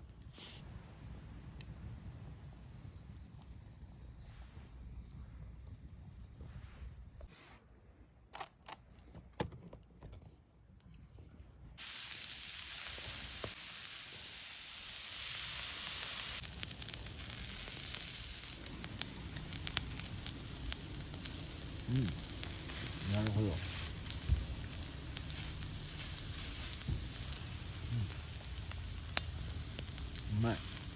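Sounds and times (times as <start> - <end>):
food sizzling on a griddle: 11.8 - 30.9.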